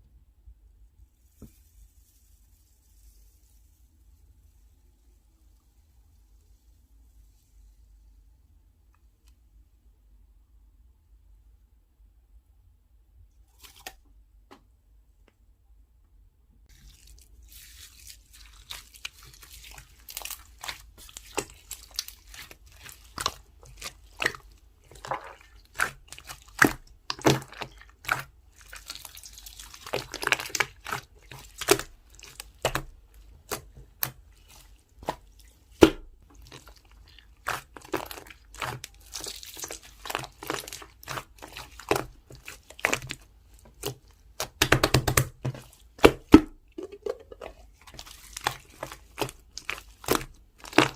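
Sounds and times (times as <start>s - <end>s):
slime squished by hand: 16.7s - 50.9s.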